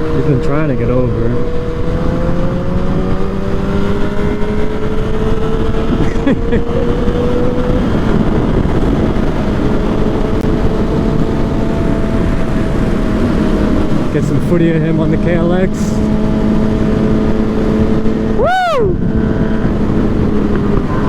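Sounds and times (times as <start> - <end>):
motorcycle engine running: 0.0 - 21.0
wind rush: 0.0 - 21.0.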